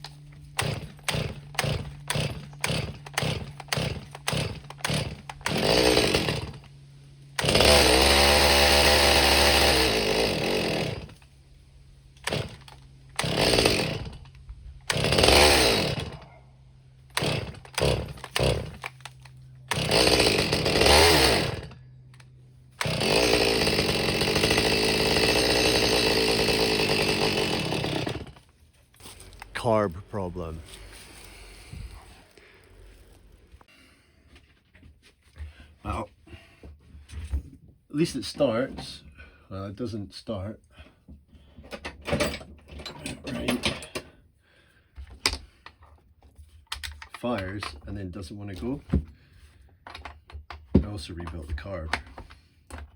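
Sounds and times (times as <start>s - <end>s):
chainsaw cord pulls: 0.0s - 11.4s, 12.1s - 16.3s, 17.0s - 33.3s, 41.6s - 44.2s, 44.8s - 52.9s
chainsaw revving: 0.5s - 11.2s, 12.2s - 16.2s, 17.0s - 22.2s, 22.8s - 33.0s.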